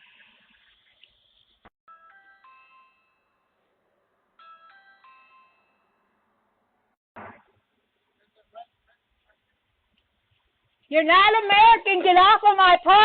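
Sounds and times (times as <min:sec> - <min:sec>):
doorbell chime: 0:01.9 - 0:03.6, 0:04.4 - 0:06.2.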